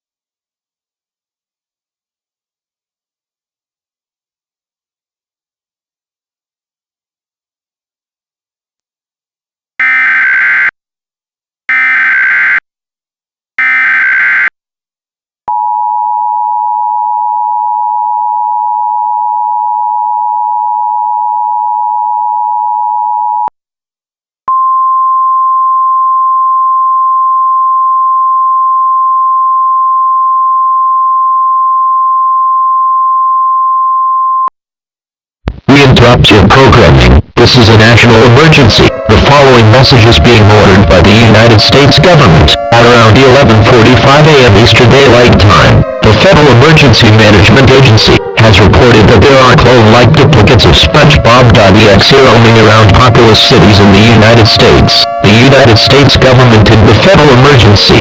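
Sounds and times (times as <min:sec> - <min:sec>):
two-tone attention signal: 0:15.5 - 0:23.5, 0:53.2 - 0:57.5.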